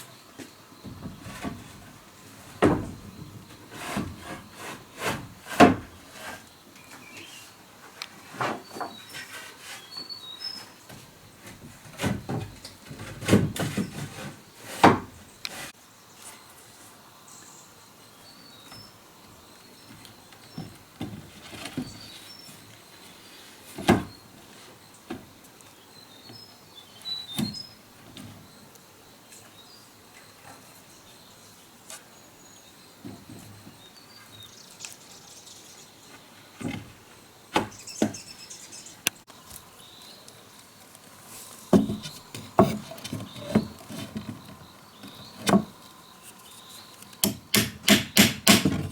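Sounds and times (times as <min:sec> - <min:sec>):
building work knocks and thumps: 0:00.4 - 0:06.4, 0:10.9 - 0:15.6, 0:19.9 - 0:22.1, 0:23.7 - 0:24.2, 0:33.0 - 0:33.8, 0:36.6 - 0:38.2, 0:41.6 - 0:45.9, 0:47.2 - 0:48.9
small birds chirping: 0:21.7 - 0:36.8, 0:37.5 - 0:47.2.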